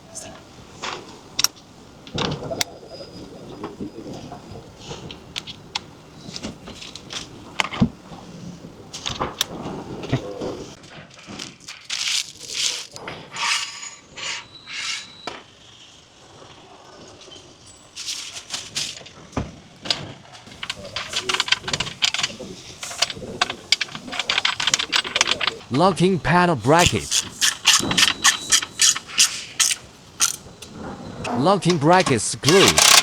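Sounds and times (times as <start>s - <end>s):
sharp clicks and knocks: 20.5s - 25.9s, 26.6s - 30.7s
short raspy bursts: 25.5s - 30.5s.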